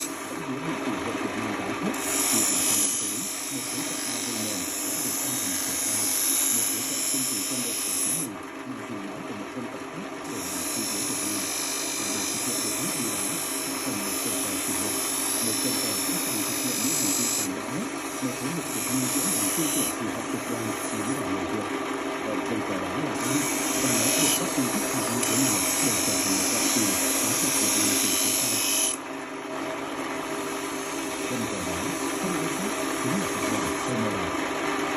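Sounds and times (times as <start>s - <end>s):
small power tool motor whine: 0.0s - 0.4s, 1.9s - 8.3s, 10.2s - 21.4s, 23.1s - 29.0s, 30.2s - 34.1s.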